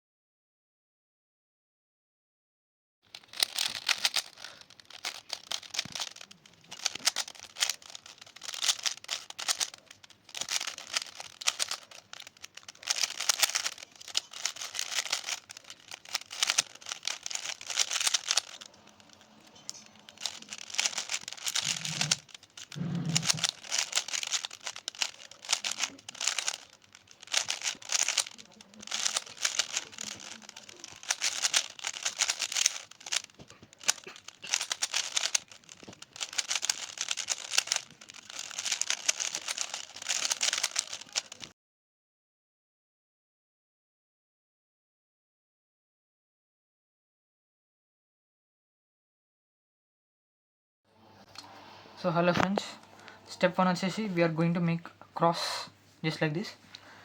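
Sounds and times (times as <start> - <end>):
puzzle cube plastic clicking: 3.1 - 41.5.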